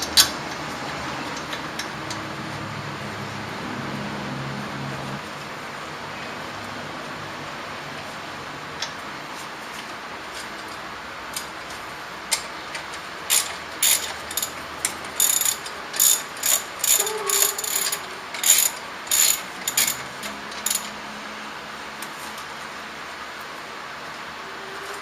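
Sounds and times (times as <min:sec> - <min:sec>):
ratchet wrench clicking: 0:12.3 - 0:21.0.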